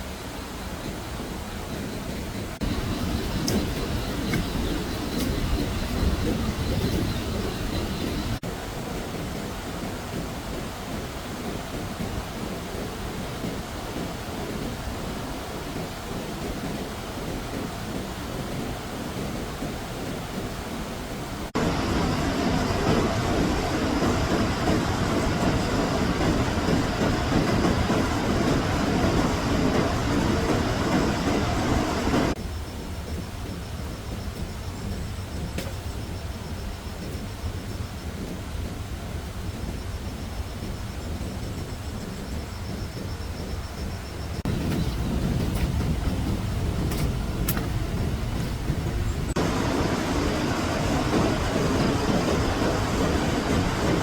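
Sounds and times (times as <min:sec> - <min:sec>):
floodwater rushing roar: 0:00.0 - 0:34.2, 0:44.4 - 0:54.0
floodwater rushing: 0:44.4 - 0:54.0.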